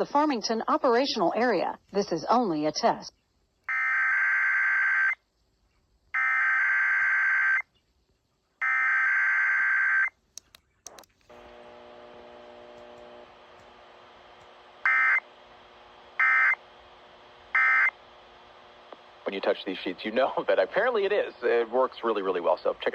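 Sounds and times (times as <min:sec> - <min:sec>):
clicks: 0:10.3 - 0:19.4
faint low hum: 0:10.4 - 0:22.9
buzzy digital screeches: 0:14.8 - 0:15.3, 0:16.2 - 0:16.6, 0:17.5 - 0:18.0.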